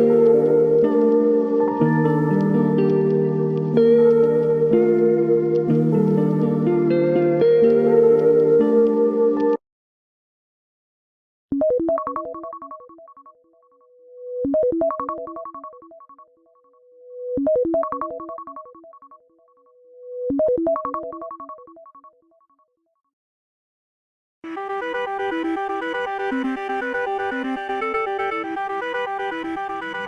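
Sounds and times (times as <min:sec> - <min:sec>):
phone ringtone melody: 0:11.6 - 0:13.4, 0:14.5 - 0:16.3, 0:17.4 - 0:19.2, 0:24.5 - 0:30.0.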